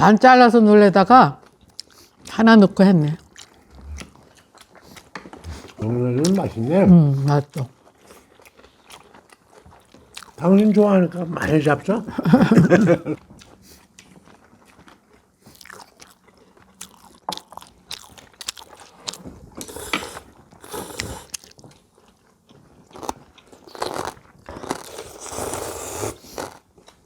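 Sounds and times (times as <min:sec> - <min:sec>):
crunchy bites and chewing: 0:13.4 - 0:27.0.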